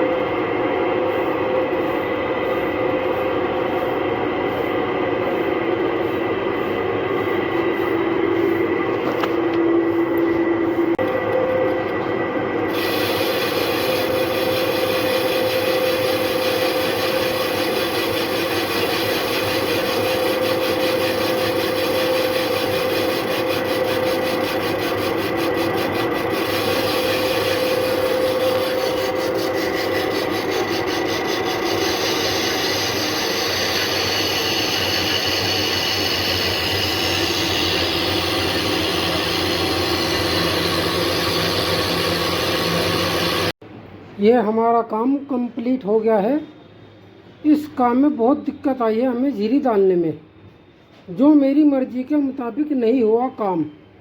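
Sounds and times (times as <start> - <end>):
lathe machine hum: 0.0 - 43.6
metal cutting noise: 12.6 - 43.6.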